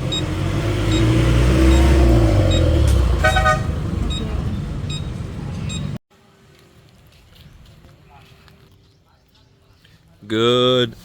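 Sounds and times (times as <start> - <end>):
vehicle engine revving: 0.0 - 6.0
short horn toot: 3.2 - 3.8.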